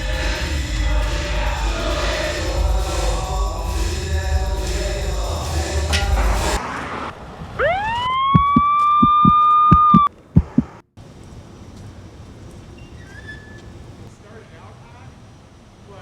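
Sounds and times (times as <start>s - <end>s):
siren-like whine: 7.6s - 10.1s
dull low thumps: 8.3s - 10.8s.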